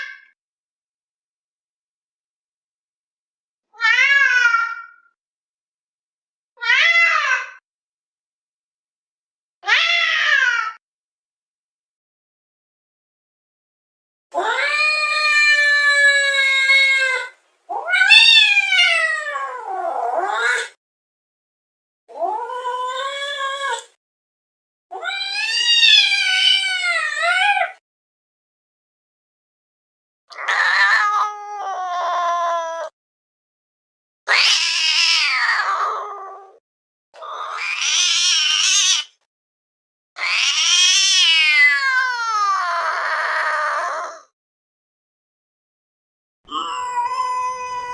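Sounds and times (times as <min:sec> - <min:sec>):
cat yowling: 0:03.8 - 0:05.1, 0:06.6 - 0:07.6, 0:09.6 - 0:10.8, 0:14.4 - 0:20.8, 0:22.1 - 0:24.0, 0:24.9 - 0:27.8, 0:30.3 - 0:33.0, 0:34.3 - 0:36.6, 0:37.2 - 0:39.2, 0:40.2 - 0:44.3, 0:46.5 - 0:47.9.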